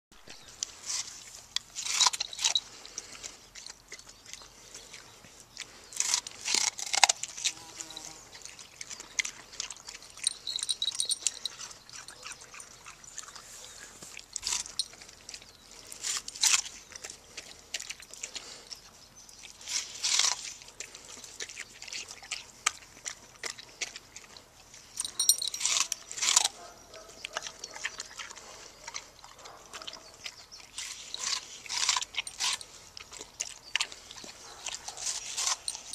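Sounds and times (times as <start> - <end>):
puppy chewing watermelon rind: 0.2 - 35.9.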